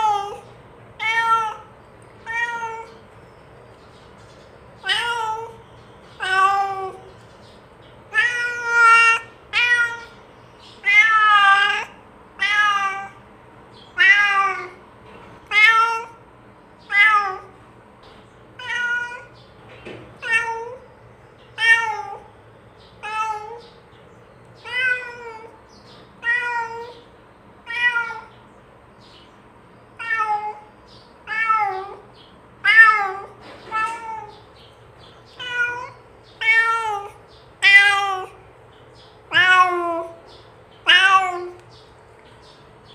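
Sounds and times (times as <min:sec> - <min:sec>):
cat meowing: 0:00.0 - 0:03.0, 0:04.8 - 0:05.6, 0:06.2 - 0:07.1, 0:08.1 - 0:10.2, 0:10.8 - 0:13.2, 0:13.9 - 0:14.8, 0:15.4 - 0:16.2, 0:16.8 - 0:17.6, 0:18.6 - 0:19.4, 0:20.2 - 0:20.8, 0:21.6 - 0:22.3, 0:23.0 - 0:23.8, 0:24.6 - 0:25.6, 0:26.2 - 0:28.4, 0:30.0 - 0:34.5, 0:35.3 - 0:38.4, 0:39.3 - 0:40.2, 0:40.8 - 0:41.7.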